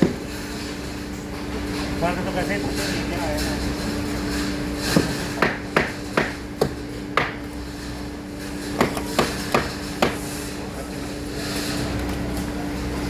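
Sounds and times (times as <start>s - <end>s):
steady hum: 0.0s - 13.0s
hammer striking: 5.0s - 7.4s, 8.8s - 10.2s.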